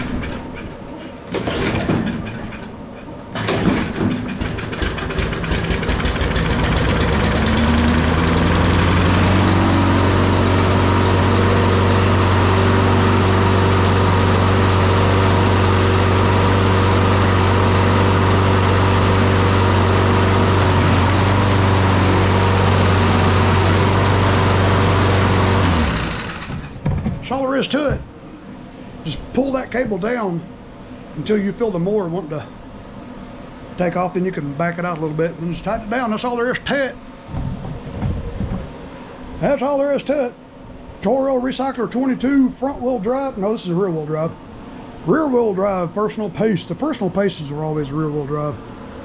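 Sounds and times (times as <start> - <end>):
lawn mower engine pull-started: 3.4 - 26.8
lawn mower engine running: 3.8 - 26.8.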